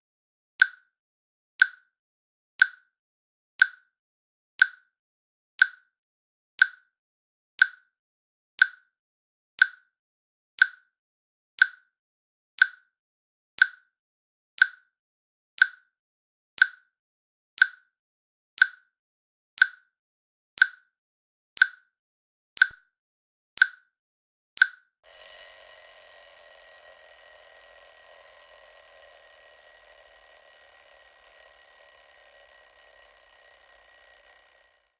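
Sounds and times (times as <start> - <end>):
timer clicking: 24.6 - 34.9
alarm ringing with high tones: 25.1 - 34.9.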